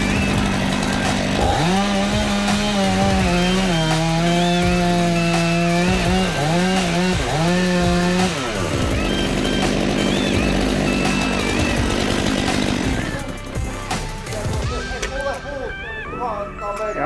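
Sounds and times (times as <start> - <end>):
chainsaw engine running: 0.0 - 14.8.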